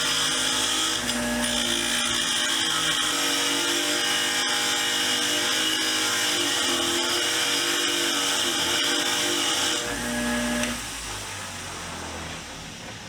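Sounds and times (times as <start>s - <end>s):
motor hum: 0.0s - 5.3s, 7.5s - 12.5s.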